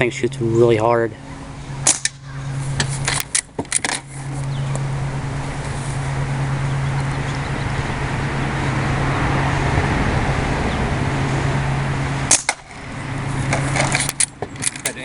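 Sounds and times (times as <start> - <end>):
low mechanical hum: 0.0 - 15.0
air rifle shot: 1.8 - 2.3, 12.3 - 12.8.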